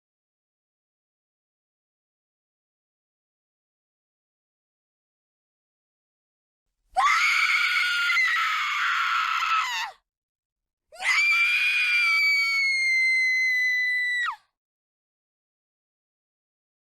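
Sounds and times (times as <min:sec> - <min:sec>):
woman screaming: 0:07.0 - 0:10.0.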